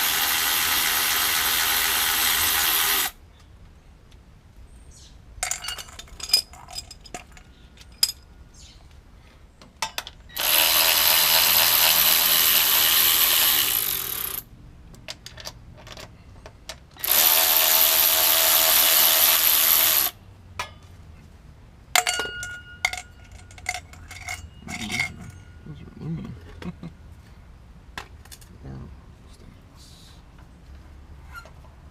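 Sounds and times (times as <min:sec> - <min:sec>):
impact wrench running: 0:00.0 - 0:03.2, 0:10.4 - 0:14.4, 0:17.0 - 0:20.2
metal tools clinking: 0:05.4 - 0:08.3, 0:22.0 - 0:26.6.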